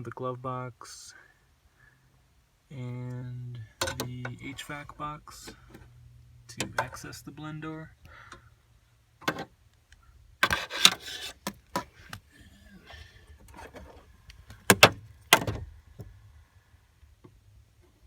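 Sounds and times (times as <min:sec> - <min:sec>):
plastic parts clicking and rattling: 0:03.8 - 0:04.1.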